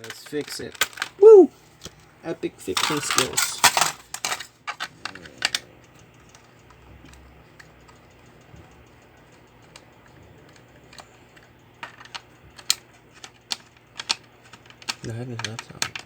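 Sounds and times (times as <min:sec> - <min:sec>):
plastic parts clicking: 0:00.0 - 0:01.2, 0:02.8 - 0:06.5, 0:10.5 - 0:16.0.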